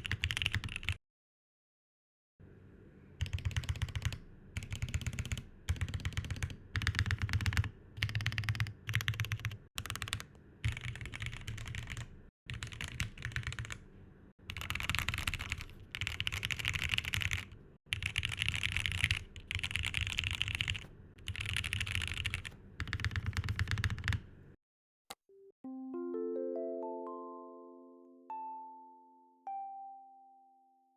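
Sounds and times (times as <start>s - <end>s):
mechanical keyboard typing: 0.0s - 1.0s, 3.2s - 24.3s.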